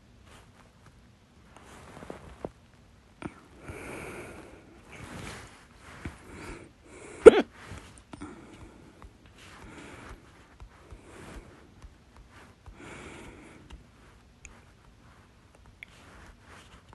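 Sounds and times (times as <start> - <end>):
person breathing: 3.2 - 14.7
person hiccupping: 7.0 - 7.5.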